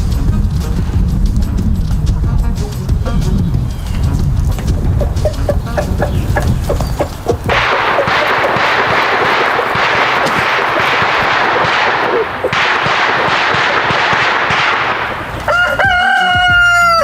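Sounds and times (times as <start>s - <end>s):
loud steady rushing hiss: 0.0s - 16.8s
rooster crowing: 4.6s - 12.5s, 15.2s - 17.0s.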